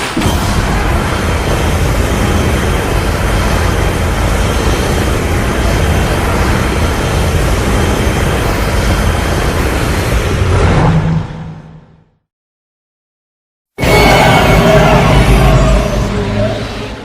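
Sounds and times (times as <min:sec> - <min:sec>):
rushing blast with low rumble: 0:00.0 - 0:12.2.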